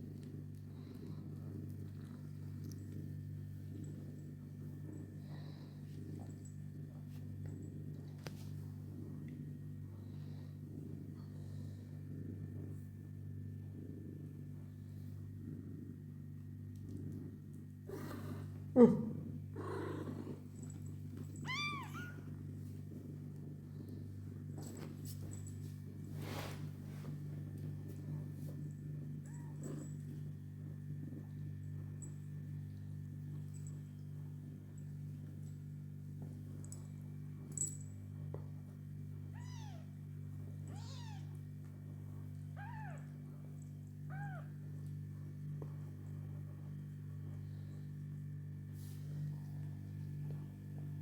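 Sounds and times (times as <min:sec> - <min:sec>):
steady low hum: 0:00.0 - 0:51.0
kitten meowing: 0:21.4 - 0:22.2, 0:39.4 - 0:39.8, 0:40.7 - 0:41.3.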